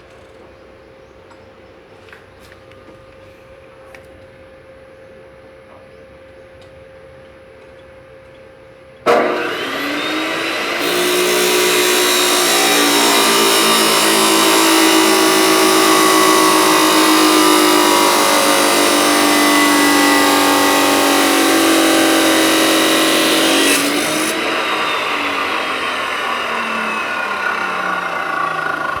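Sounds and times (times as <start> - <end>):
electric grinder motor whine: 9.1 - 29.0
grinder cutting material: 9.1 - 29.0.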